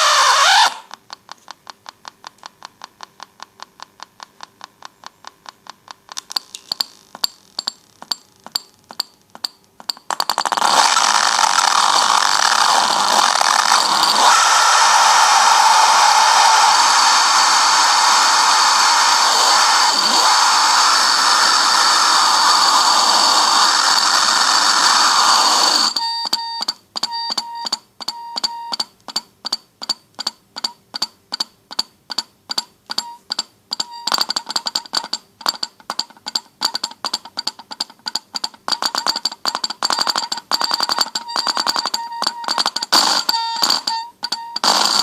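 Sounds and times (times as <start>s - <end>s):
rapid electronic beeping: 38.7s - 45.0s.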